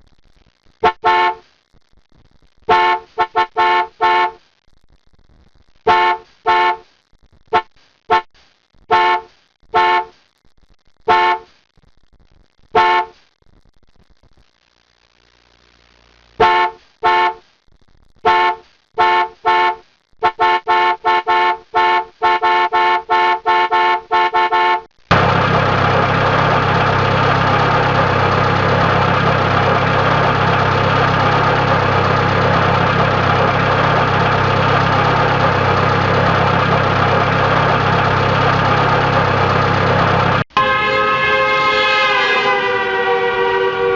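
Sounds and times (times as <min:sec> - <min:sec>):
car horn honking: 0:00.8 - 0:01.4, 0:02.7 - 0:04.4, 0:05.9 - 0:06.8, 0:08.9 - 0:10.1, 0:11.1 - 0:11.4, 0:12.8 - 0:13.1, 0:16.4 - 0:17.4, 0:18.3 - 0:43.9.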